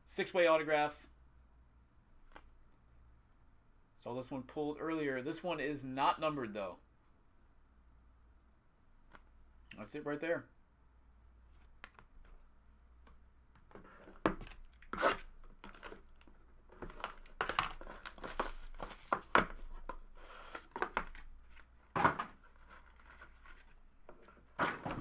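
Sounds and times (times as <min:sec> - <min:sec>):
packaging tearing and crinkling: 0:14.4 - 0:19.7.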